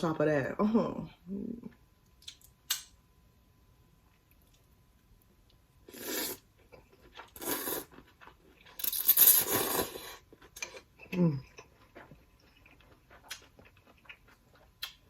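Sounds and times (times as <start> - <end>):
food crunching and rustling: 6.4 - 15.0.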